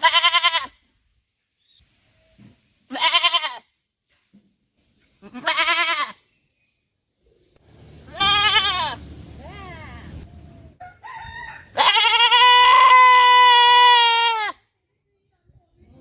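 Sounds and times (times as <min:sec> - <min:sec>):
goat bleating: 0:00.0 - 0:00.8, 0:02.9 - 0:03.7, 0:05.2 - 0:06.2, 0:08.1 - 0:10.2, 0:11.8 - 0:14.6
steady low background noise: 0:07.0 - 0:11.0.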